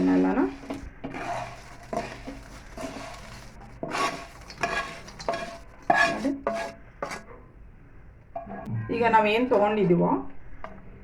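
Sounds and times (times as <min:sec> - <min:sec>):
spoon stirring chips in a pan: 0:00.0 - 0:07.3.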